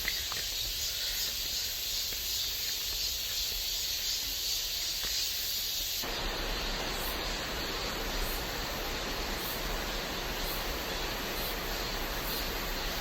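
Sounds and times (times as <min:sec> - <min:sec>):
high-pitched outdoor hiss: 0:00.0 - 0:13.0
rushing noise: 0:06.0 - 0:13.0.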